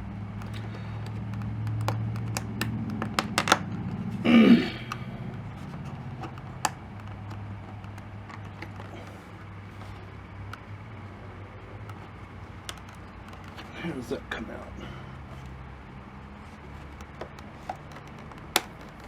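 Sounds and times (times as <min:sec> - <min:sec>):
small plastic clicks and taps: 0:00.4 - 0:04.1, 0:04.8 - 0:10.7, 0:11.8 - 0:13.7, 0:16.4 - 0:19.0.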